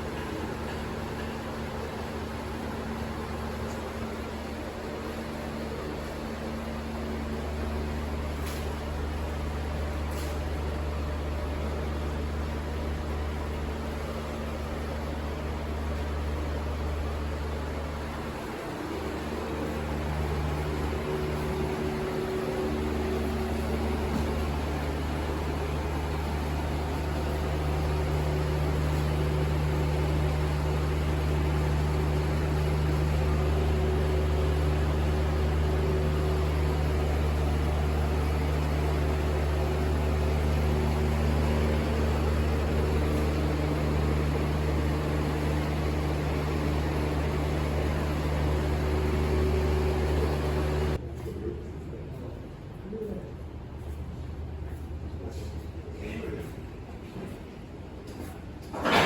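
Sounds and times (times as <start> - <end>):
machine hum: 0.0 - 51.2.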